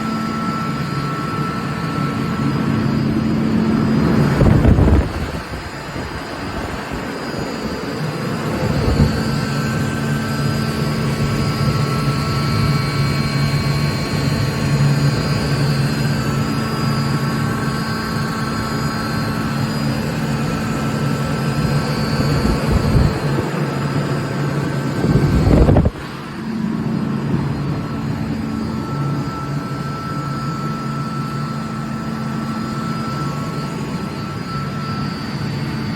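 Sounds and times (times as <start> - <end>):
air compressor running: 0.0 - 35.9
faint high whine: 0.0 - 35.9.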